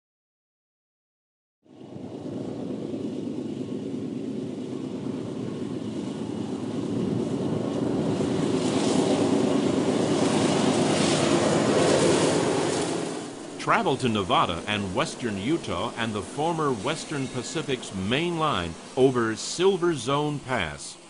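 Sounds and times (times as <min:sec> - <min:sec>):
rail noise: 0:09.0 - 0:21.0
locomotive engines humming: 0:09.7 - 0:21.0.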